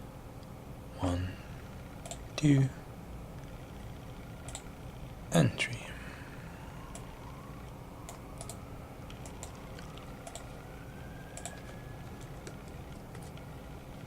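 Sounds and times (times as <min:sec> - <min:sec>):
low background hiss: 0:00.0 - 0:14.0
computer keys clicking: 0:08.0 - 0:10.5, 0:11.3 - 0:13.4.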